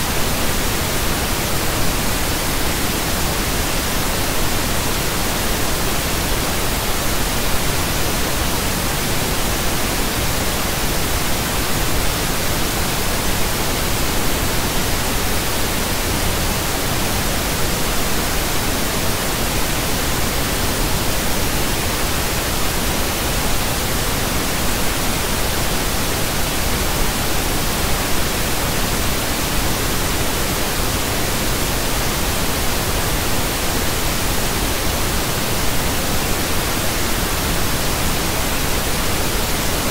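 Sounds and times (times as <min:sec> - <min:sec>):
pink noise hiss: 0:00.0 - 0:39.9.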